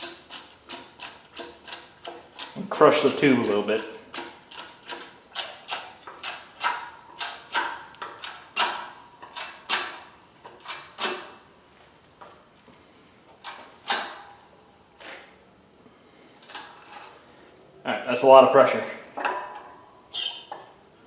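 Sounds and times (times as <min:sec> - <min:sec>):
hydraulic press pump clicking: 0:00.0 - 0:11.3.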